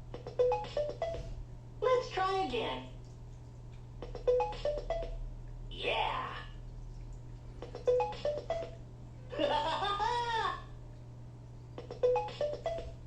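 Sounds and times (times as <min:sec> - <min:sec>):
electronic clicks and blips: 0:00.1 - 0:01.4, 0:04.0 - 0:05.2, 0:07.6 - 0:08.8, 0:11.8 - 0:13.0.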